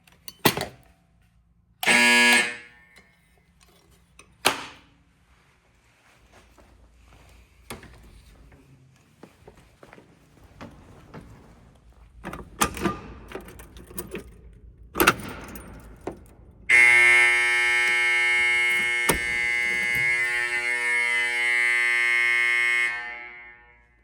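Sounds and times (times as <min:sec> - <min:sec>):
fire alarm horns buzzing: 0:01.8 - 0:03.2, 0:15.0 - 0:24.0
clicks and knocks: 0:12.1 - 0:16.8.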